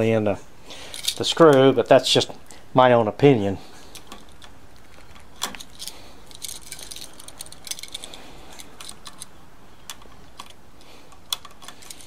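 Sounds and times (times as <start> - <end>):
metallic clicks and rattling: 0.8 - 1.7, 3.9 - 12.0.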